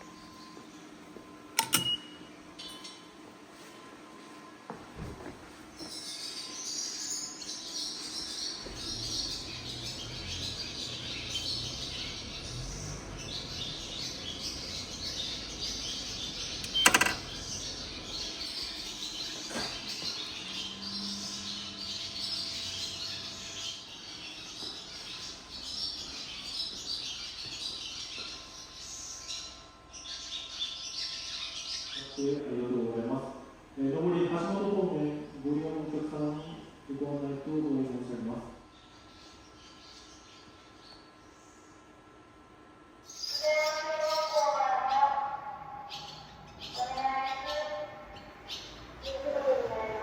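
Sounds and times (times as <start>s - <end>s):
birds chirping: 0.0s - 3.2s, 5.6s - 50.0s
sharp click: 1.6s - 2.1s.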